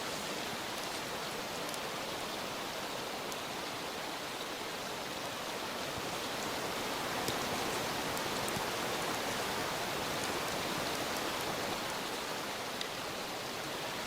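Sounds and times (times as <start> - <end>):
fire crackling: 0.0 - 3.8, 5.4 - 12.0
food sizzling over campfire: 0.0 - 14.0.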